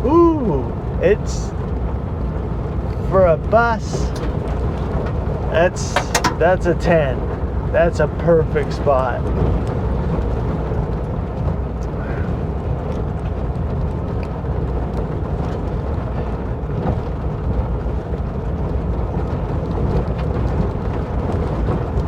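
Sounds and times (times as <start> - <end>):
van engine running: 0.0 - 22.0
body rattles and clicks: 4.0 - 7.8.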